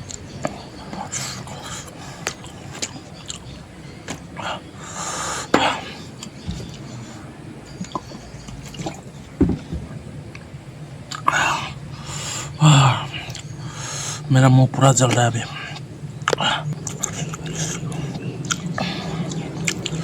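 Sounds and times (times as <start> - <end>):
wet chewing and lip smacks: 0.0 - 4.4, 11.1 - 11.4, 15.1 - 20.0.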